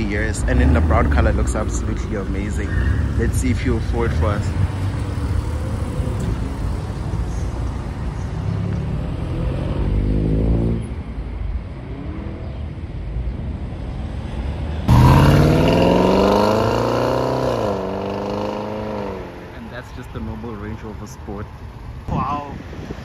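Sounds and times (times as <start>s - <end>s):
loud car engine starting: 0.0s - 6.9s, 14.7s - 19.7s
car engine accelerating: 0.0s - 7.4s, 13.8s - 19.8s.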